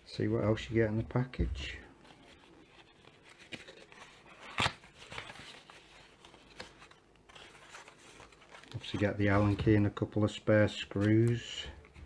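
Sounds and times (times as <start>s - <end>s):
packaging rustling: 2.0s - 9.8s.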